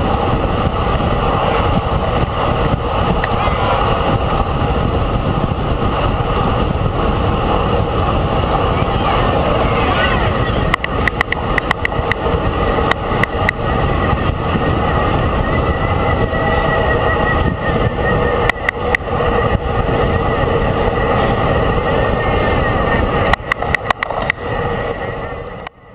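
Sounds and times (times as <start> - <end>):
vehicle driving at speed: 0.0 - 25.9
wind rumble on microphone: 0.0 - 25.9
sharp clicks: 10.7 - 12.2.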